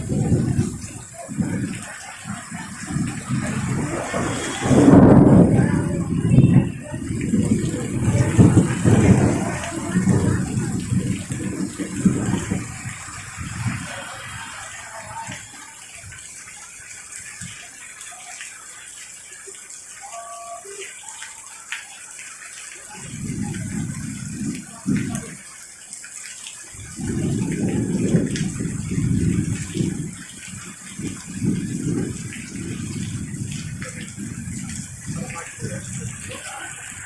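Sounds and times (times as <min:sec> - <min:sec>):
rolling thunder: 0:00.0 - 0:15.5, 0:23.0 - 0:25.4, 0:26.8 - 0:37.0
heavy rain pouring: 0:00.0 - 0:37.0.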